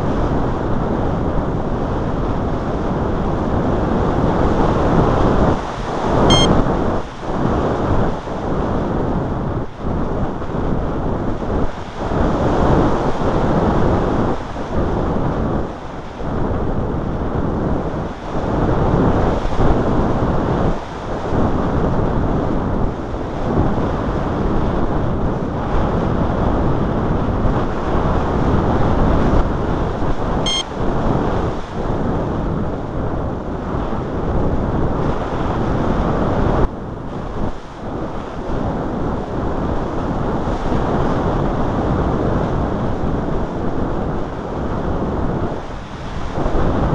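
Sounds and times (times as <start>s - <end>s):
wind on microphone: 0.0s - 46.9s
high-pitched blip: 6.3s - 6.5s, 30.5s - 30.7s.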